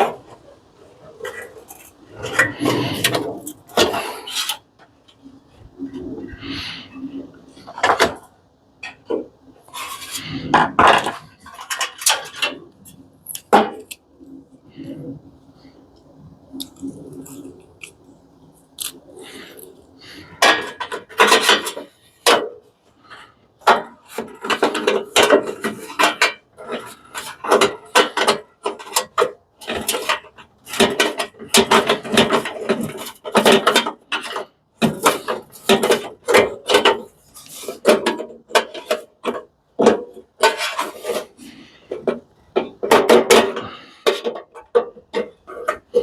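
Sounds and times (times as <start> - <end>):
hand tools clanking on metal: 18.8 - 46.0.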